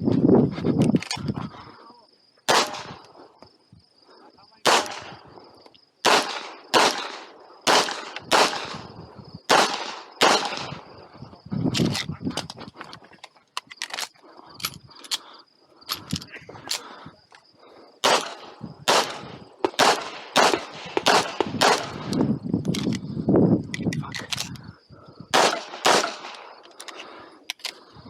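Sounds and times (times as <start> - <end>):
handgun shots with echo: 2.5 - 3.0, 4.6 - 5.2, 6.0 - 8.8, 9.5 - 10.8, 18.0 - 22.1, 25.4 - 26.5
lighter gun cracks: 2.5 - 3.2, 4.6 - 5.2, 6.0 - 8.8, 9.5 - 10.8, 18.0 - 23.0, 25.4 - 27.9.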